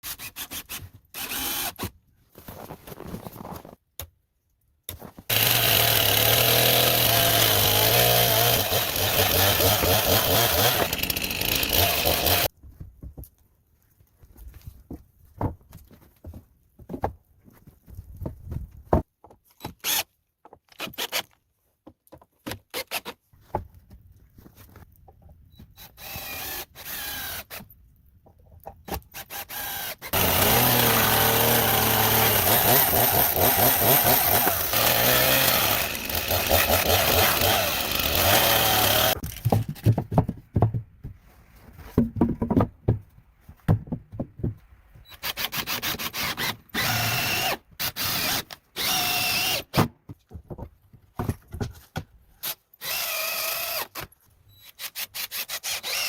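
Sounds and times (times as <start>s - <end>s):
drill whining: 0.0s - 1.9s, 5.3s - 12.5s, 25.8s - 27.6s, 29.2s - 39.4s, 45.1s - 49.7s, 52.4s - 54.0s, 54.6s - 56.0s
power tools working wood: 5.3s - 12.5s, 29.4s - 39.5s.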